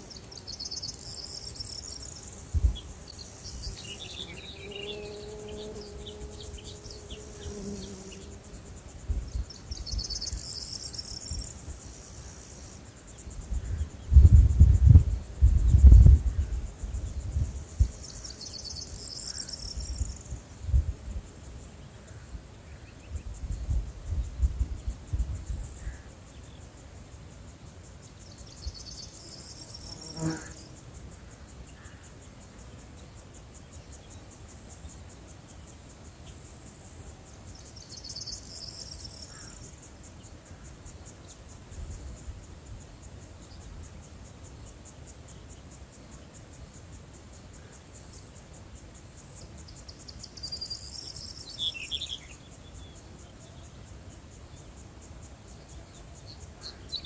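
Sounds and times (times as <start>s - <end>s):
crickets chirring: 0.0s - 57.0s.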